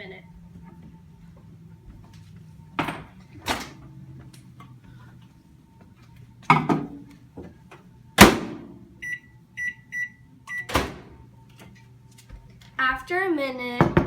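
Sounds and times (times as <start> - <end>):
microwave high beeps: 9.0 - 10.9
microwave door banging shut: 10.7 - 11.2.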